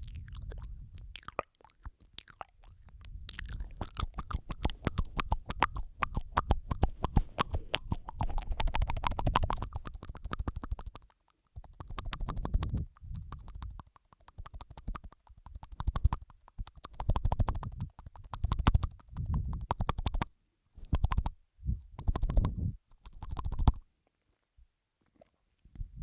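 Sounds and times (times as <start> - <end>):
wet mouth clicks and smacks: 0.0 - 23.8.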